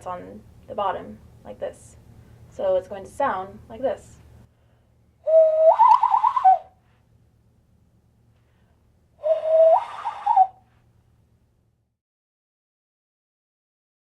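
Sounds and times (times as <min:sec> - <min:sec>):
cupped-hand whistle warbling: 0:05.2 - 0:06.8, 0:09.2 - 0:10.6.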